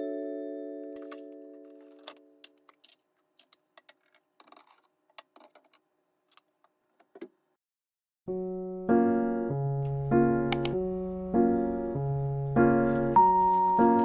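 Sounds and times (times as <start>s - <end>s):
background music: 8.4s - 14.0s
small hard objects clinking: 12.9s - 14.0s.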